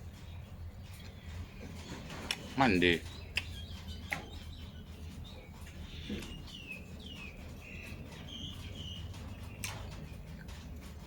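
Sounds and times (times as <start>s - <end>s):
small bird chirping: 0.0s - 10.6s
low background hum: 0.0s - 11.0s.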